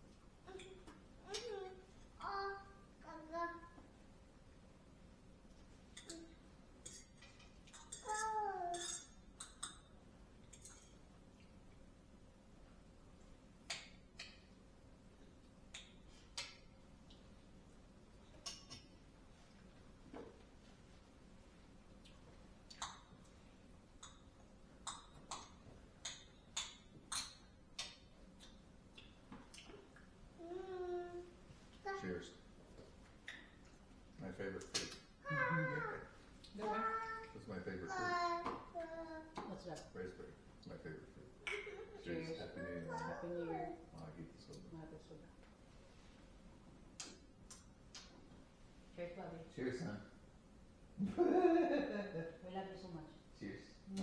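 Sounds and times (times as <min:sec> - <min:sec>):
tableware clinking: 0:06.8 - 0:09.9.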